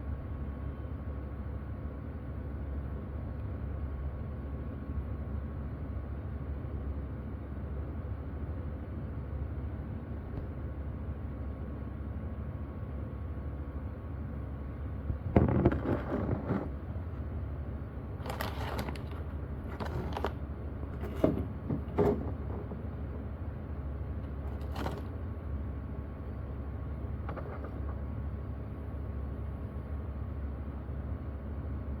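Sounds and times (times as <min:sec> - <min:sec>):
steady low hum: 0:07.5 - 0:32.0.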